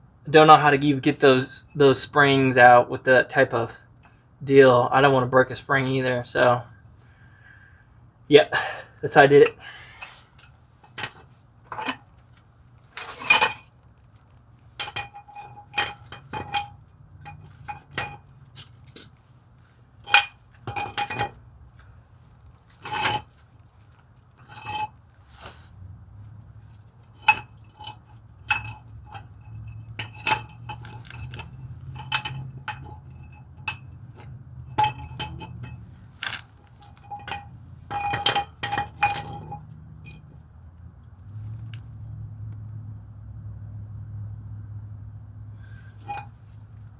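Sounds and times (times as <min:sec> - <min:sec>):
metal parts and tools clinking: 0:10.3 - 0:12.2, 0:12.9 - 0:13.7, 0:14.8 - 0:19.1, 0:20.0 - 0:21.4, 0:22.7 - 0:25.0, 0:26.7 - 0:40.4, 0:46.0 - 0:46.4.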